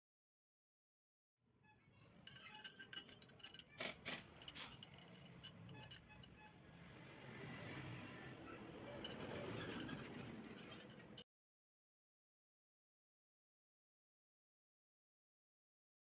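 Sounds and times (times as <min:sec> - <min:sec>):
light metallic clinks and taps: 0:02.3 - 0:06.3.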